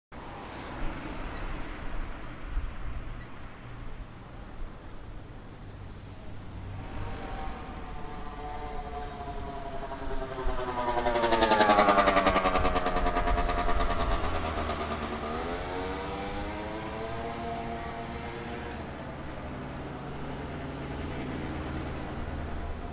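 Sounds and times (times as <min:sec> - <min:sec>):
low rumble of traffic: 0:00.1 - 0:22.9
vehicle engine passing: 0:06.6 - 0:22.9.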